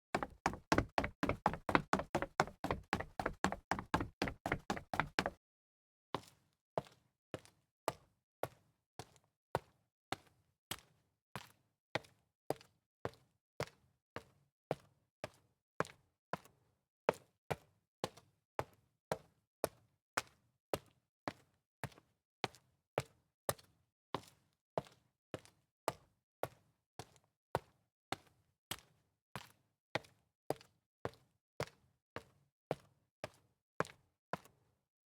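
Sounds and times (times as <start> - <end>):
sharp evenly spaced taps: 0.2 - 5.3.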